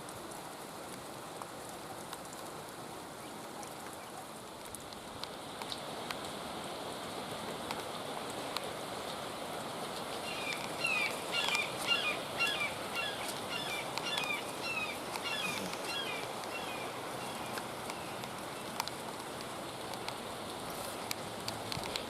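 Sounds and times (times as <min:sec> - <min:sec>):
steady outdoor hiss: 0:00.0 - 0:22.0
songbird chirping: 0:10.3 - 0:18.8.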